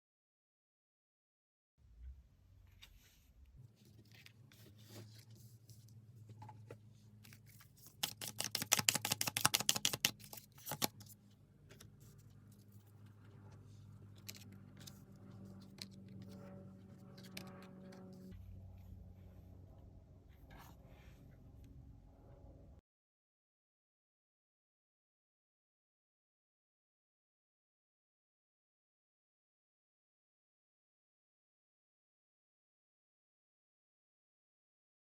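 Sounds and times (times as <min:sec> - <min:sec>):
cards rustling and clicking: 0:03.8 - 0:16.4, 0:17.0 - 0:18.1
low steady hum: 0:10.2 - 0:22.8.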